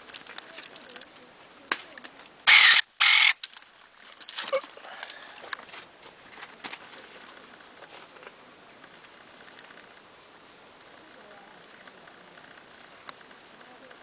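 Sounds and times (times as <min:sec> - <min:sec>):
light rustling and ticks: 0:00.0 - 0:02.4, 0:03.4 - 0:14.0
electric pruning shears buzzing: 0:02.5 - 0:03.5.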